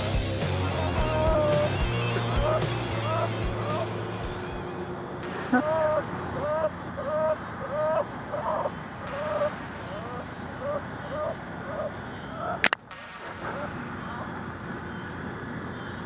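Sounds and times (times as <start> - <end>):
catfish croaking squeaky calls: 5.5 - 12.7.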